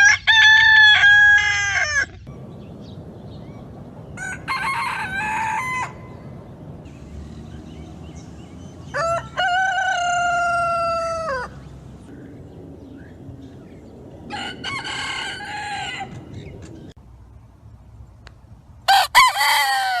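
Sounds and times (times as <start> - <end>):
rooster crowing: 0.0 - 2.1, 4.2 - 6.2, 8.8 - 11.6, 14.3 - 16.4, 18.9 - 20.0.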